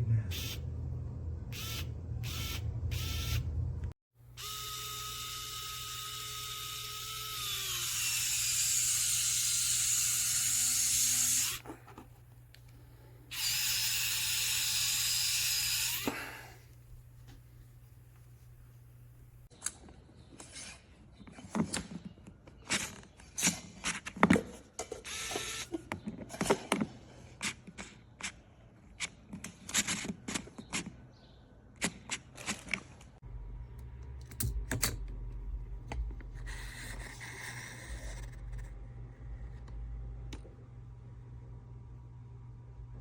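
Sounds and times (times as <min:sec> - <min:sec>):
low hum and rumble: 0:00.0 - 0:04.0, 0:33.2 - 0:43.0.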